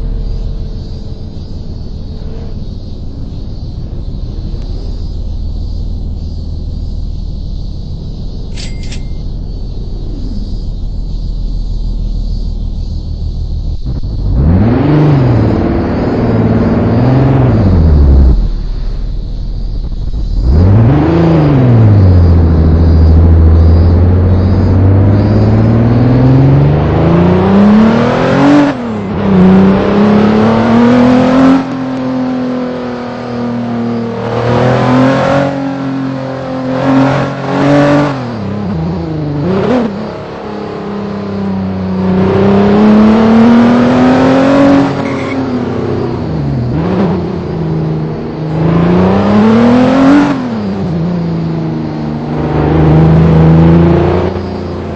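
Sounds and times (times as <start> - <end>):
vehicle engine accelerating: 9.5 - 54.9.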